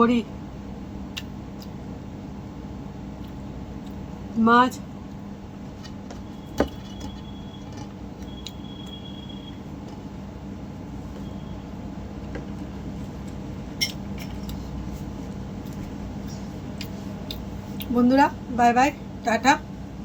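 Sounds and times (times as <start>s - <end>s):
quiet eating sounds: 1.0s - 1.9s, 3.0s - 10.2s, 12.3s - 19.1s.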